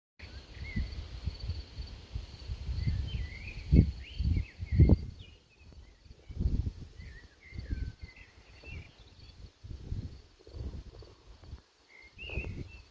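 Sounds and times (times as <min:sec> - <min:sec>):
wind buffeting microphone: 0:00.3 - 0:12.9
high insect trill: 0:00.4 - 0:08.1
birds chirping: 0:02.8 - 0:09.5, 0:11.8 - 0:12.9.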